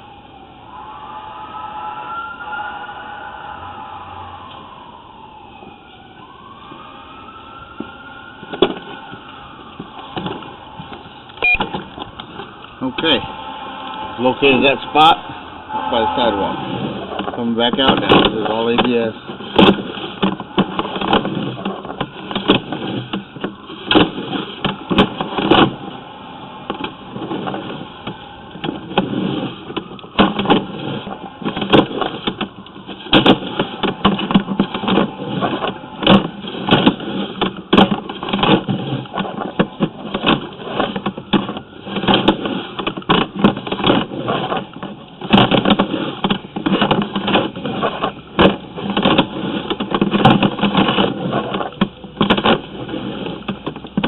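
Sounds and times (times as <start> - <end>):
cable knocking and rattling: 26.6 - 54.0.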